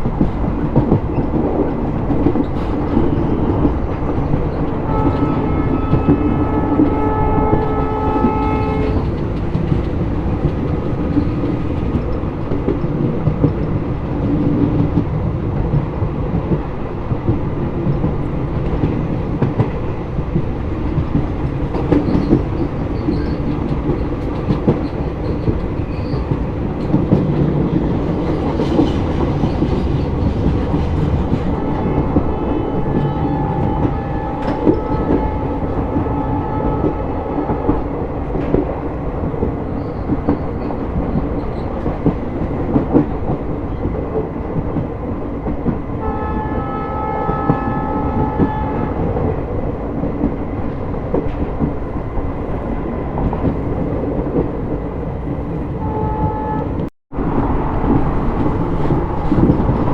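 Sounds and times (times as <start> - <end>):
train rumble and wheel clatter: 0.0 - 59.9
locomotive horn blasts: 4.8 - 9.1, 31.5 - 37.2, 46.0 - 49.2, 55.8 - 56.9.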